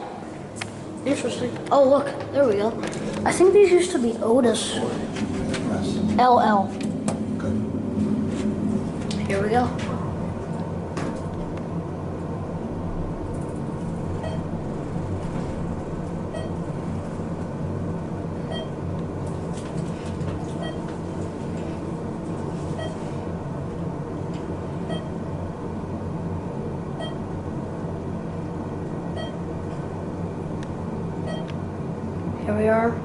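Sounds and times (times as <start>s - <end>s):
elevator low rumble and hum: 0.0s - 33.0s.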